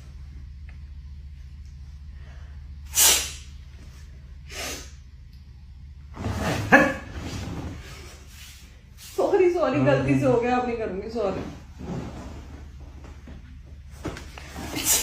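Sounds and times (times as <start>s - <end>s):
steady low hum: 0.0s - 15.0s
person sneezing: 2.9s - 3.4s.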